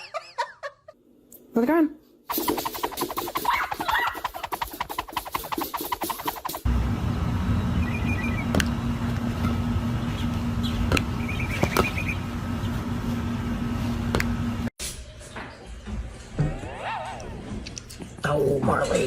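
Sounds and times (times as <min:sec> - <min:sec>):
steady hum: 0:04.4 - 0:14.7
high chirping trills: 0:07.5 - 0:08.6, 0:10.0 - 0:12.8.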